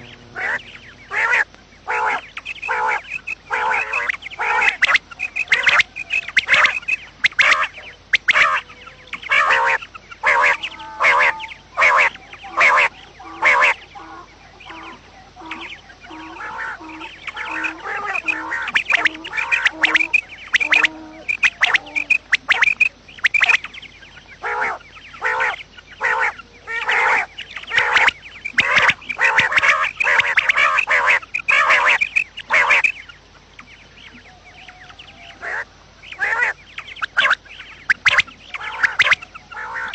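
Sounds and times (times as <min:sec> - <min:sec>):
soft low repeating note: 0:00.0 - 0:02.4
quail calling harsh notes: 0:00.0 - 0:23.8, 0:24.4 - 0:39.9.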